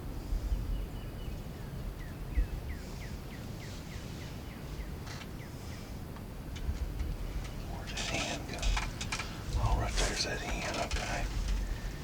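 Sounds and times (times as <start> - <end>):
low rumble of wind: 0.0 - 12.0
sharp clicks: 7.4 - 11.6.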